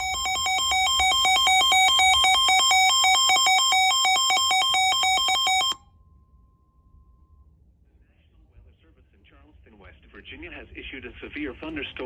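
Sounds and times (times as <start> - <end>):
weather alert radio beeping: 0.0 - 5.8
faint steady tone: 0.0 - 8.2.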